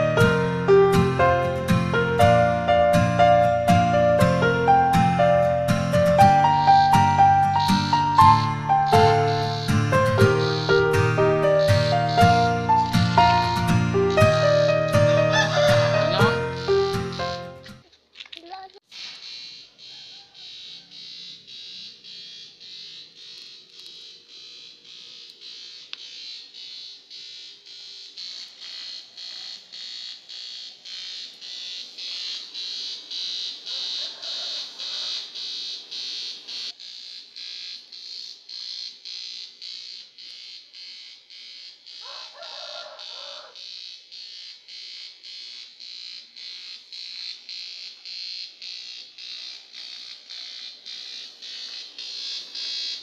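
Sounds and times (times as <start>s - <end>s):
pulsing welder arc buzz: 21.2s - 53.0s.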